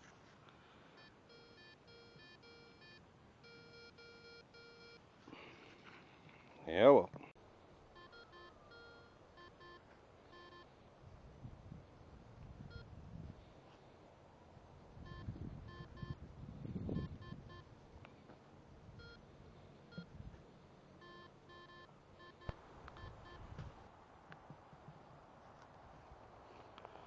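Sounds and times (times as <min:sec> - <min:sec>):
metal detector beeps: 0:01.0 - 0:05.0, 0:07.9 - 0:10.7, 0:12.7 - 0:12.9, 0:15.0 - 0:16.2, 0:17.0 - 0:17.7, 0:19.0 - 0:19.2, 0:21.0 - 0:23.4.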